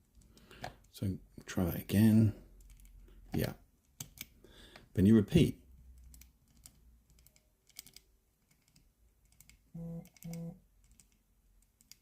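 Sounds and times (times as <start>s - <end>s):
keypad button clicks: 9.8s - 10.6s
short low tones: 9.8s - 10.6s.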